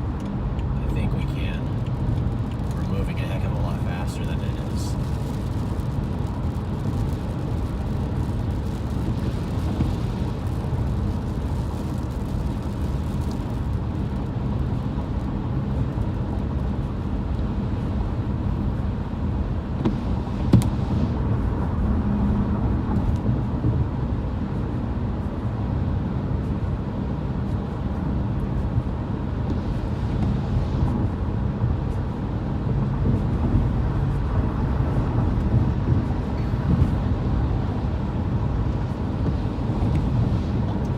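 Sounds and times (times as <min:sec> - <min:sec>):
car driving rumble from inside: 0:00.0 - 0:40.9
gusty wind hitting car: 0:00.0 - 0:40.9.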